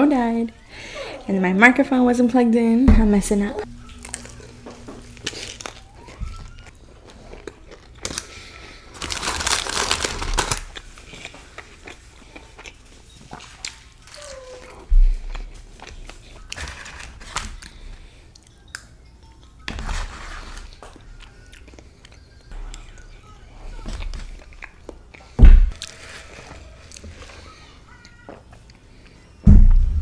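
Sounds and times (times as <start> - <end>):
dull thump: 2.9 - 3.8, 25.4 - 25.8, 29.4 - 30.0
crinkling: 2.9 - 18.9, 19.5 - 30.0
crunchy chewing: 3.6 - 29.4.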